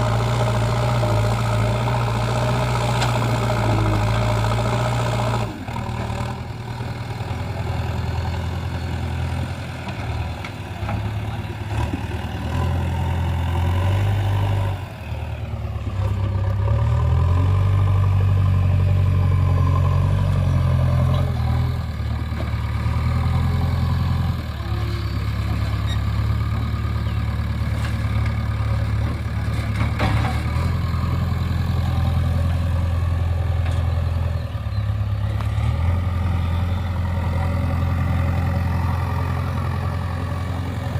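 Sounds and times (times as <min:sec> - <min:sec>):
diesel engine running and revving: 0:00.0 - 0:40.9.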